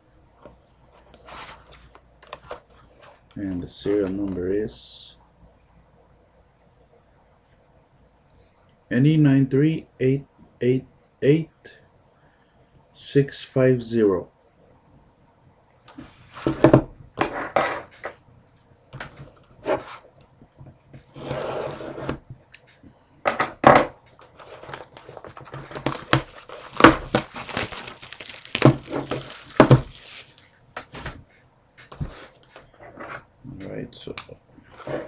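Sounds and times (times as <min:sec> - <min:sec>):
plastic wrapping crinkling and tearing: 0:24.6 - 0:31.0.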